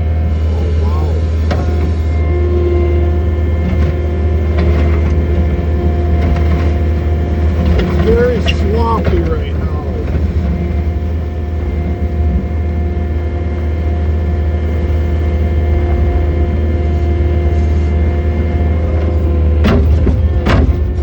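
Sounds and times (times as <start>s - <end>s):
diesel engine droning: 0.0s - 21.0s
sharp knocks: 19.6s - 21.0s.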